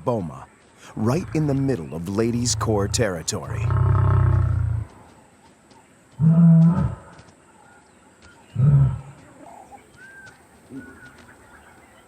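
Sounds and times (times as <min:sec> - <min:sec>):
lion calling: 0:00.9 - 0:05.0.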